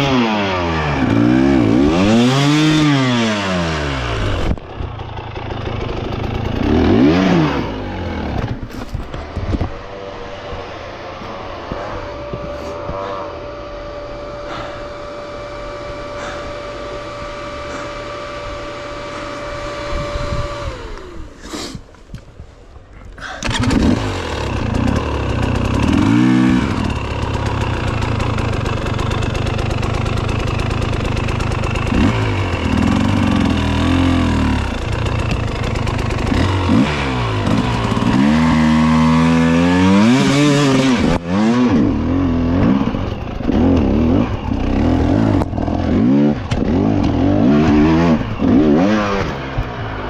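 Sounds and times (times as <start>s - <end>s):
dirt bike engine revving: 0.0s - 21.8s, 23.2s - 50.0s.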